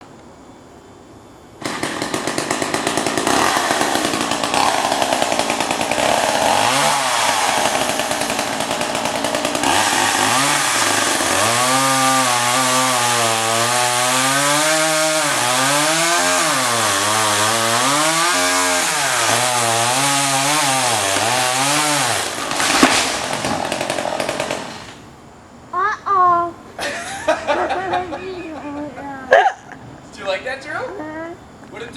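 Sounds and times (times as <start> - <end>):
chainsaw cutting through tree: 1.6 - 25.0.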